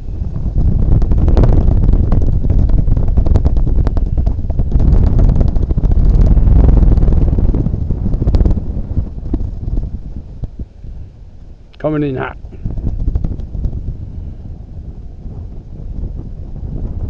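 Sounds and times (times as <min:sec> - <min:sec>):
wind buffeting microphone: 0:00.0 - 0:17.0
crackling pops: 0:01.0 - 0:10.7.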